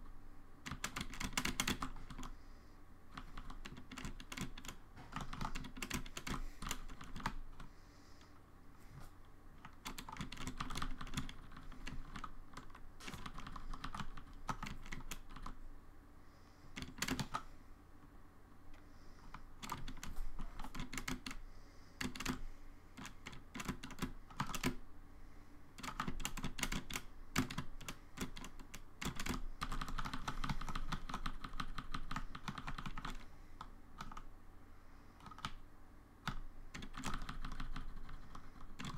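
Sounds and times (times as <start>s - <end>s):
computer keyboard typing: 0.6s - 2.3s, 3.1s - 7.7s, 9.6s - 15.6s, 16.7s - 17.5s, 19.3s - 21.4s, 22.0s - 22.4s, 23.0s - 24.8s, 25.8s - 34.3s, 35.2s - 35.6s, 36.2s - 38.9s.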